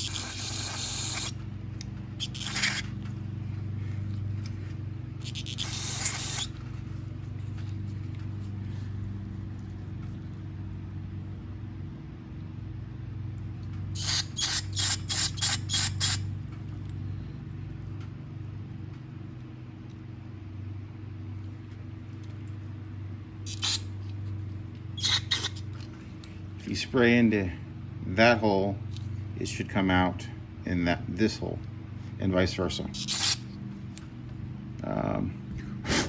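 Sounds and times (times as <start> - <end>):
aerosol can spurts: 0.0 - 1.4, 2.2 - 3.0, 5.2 - 6.6, 14.0 - 16.2, 23.4 - 23.9, 25.0 - 25.8, 33.0 - 33.5
steady low hum: 0.0 - 36.0.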